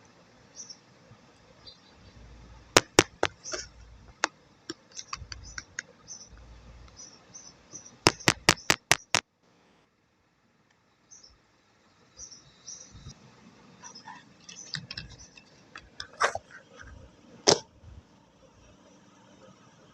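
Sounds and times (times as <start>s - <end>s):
sharp clicks: 2.8s - 7.0s, 8.0s - 9.2s.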